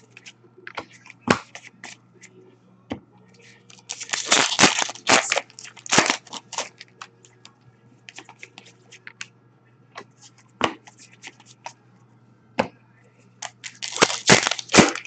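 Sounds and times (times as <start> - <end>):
card packs crinkling and rustling: 3.7 - 7.0, 13.4 - 15.0.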